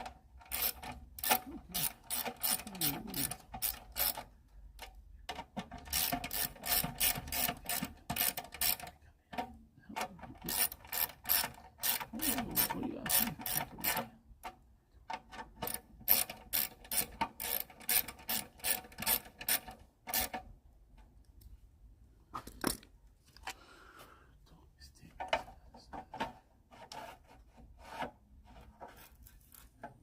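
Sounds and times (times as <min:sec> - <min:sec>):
hand ratchet clicking: 0:00.0 - 0:08.9, 0:10.0 - 0:14.1, 0:15.6 - 0:20.4.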